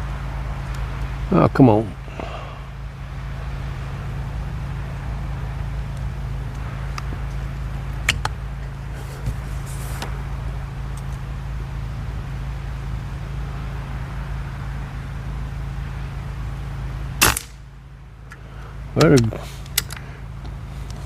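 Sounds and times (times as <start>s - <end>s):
steady low rumble: 0.0s - 21.0s
air rifle firing: 17.2s - 17.6s.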